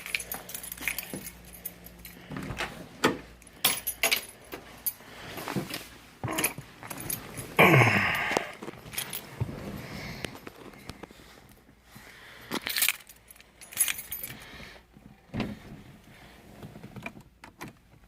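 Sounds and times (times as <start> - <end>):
car keys jangling: 0.0 - 2.3, 3.3 - 5.0, 6.4 - 7.6, 8.7 - 9.4, 12.5 - 14.5.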